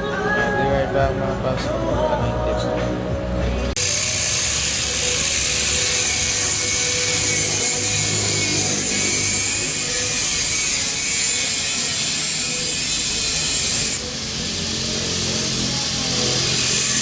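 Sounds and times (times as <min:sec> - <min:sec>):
power tool grinding: 0:03.8 - 0:17.0.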